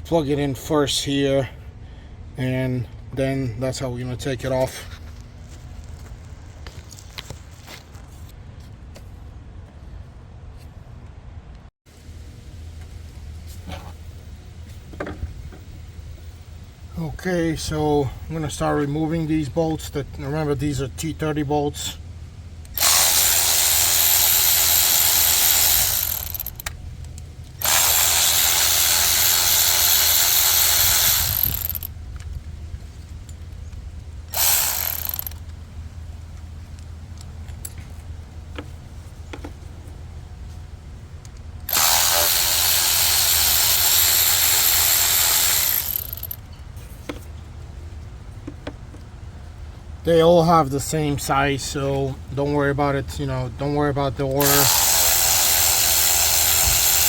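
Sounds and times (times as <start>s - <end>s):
cordless power tool spinning bolts: 22.6s - 26.8s, 27.5s - 31.9s, 34.3s - 35.5s, 41.6s - 46.4s, 54.3s - 57.0s.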